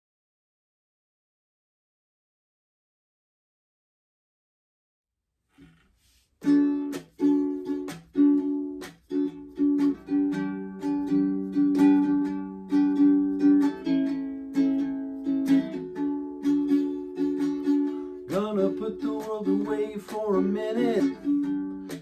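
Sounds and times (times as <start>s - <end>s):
ukulele strumming chords: 6.4s - 22.0s.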